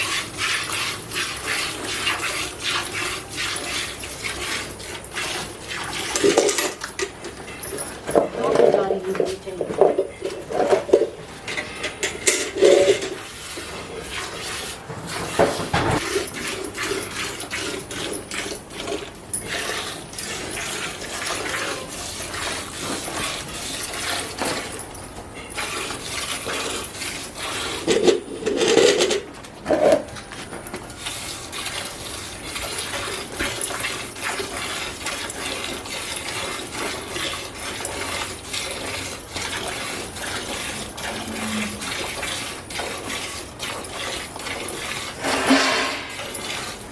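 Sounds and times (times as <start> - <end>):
milk squirting into a pail: 30.8 - 46.9.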